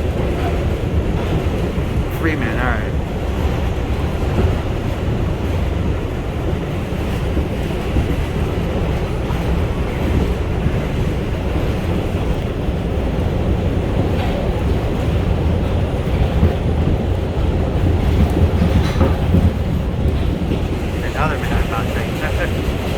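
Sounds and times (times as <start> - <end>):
wheels rumbling on rails: 0.0 - 22.9
rushing noise: 20.9 - 22.9.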